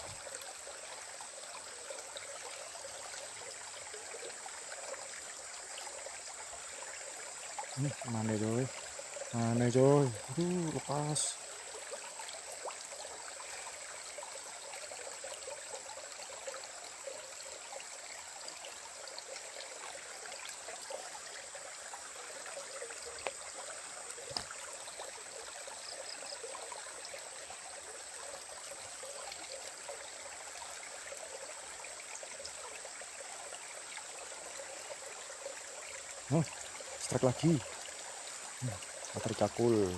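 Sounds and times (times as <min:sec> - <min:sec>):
stream water flowing: 0:00.0 - 0:39.9.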